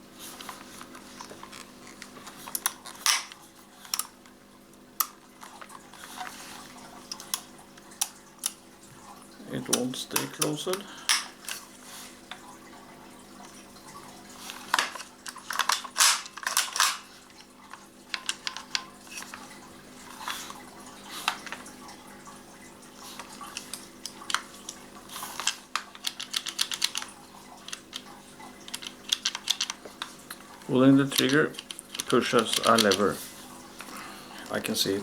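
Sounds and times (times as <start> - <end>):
faint steady hum: 0.0 - 35.0
toy gun clicks and rattles: 15.3 - 17.0, 25.4 - 28.1, 28.7 - 29.8, 31.1 - 33.1.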